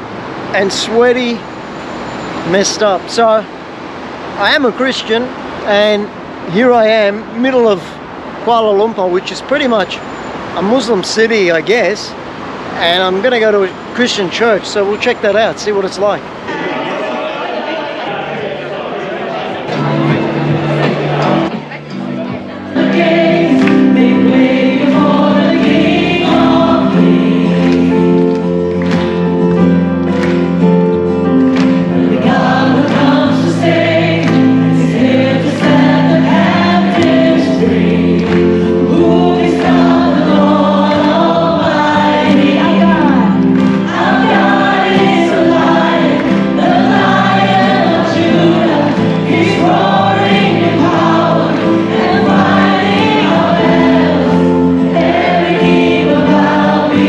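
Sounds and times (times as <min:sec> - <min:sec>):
choir singing worship music: 0:16.4 - 0:21.6, 0:22.6 - 0:57.0
held instrumental chords: 0:16.4 - 0:57.0.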